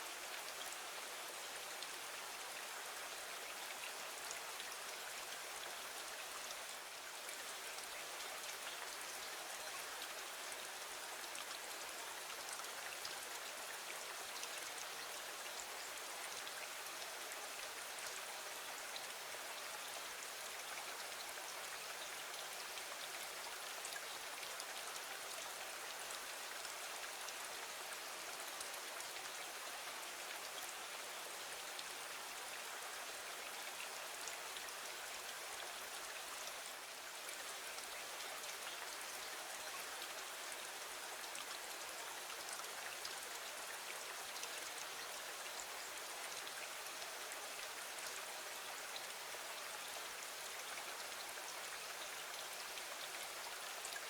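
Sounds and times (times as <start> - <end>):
steady rain: 0.0 - 54.0.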